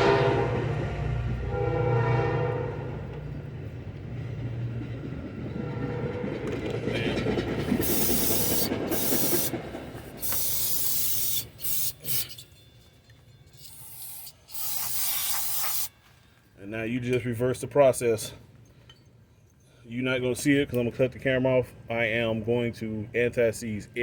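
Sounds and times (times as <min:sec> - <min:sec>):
distant train horn: 0:00.0 - 0:03.4, 0:05.6 - 0:07.3
train rumbling past: 0:00.0 - 0:13.0
aerosol can spraying: 0:07.8 - 0:09.5, 0:10.2 - 0:12.4, 0:13.6 - 0:15.9.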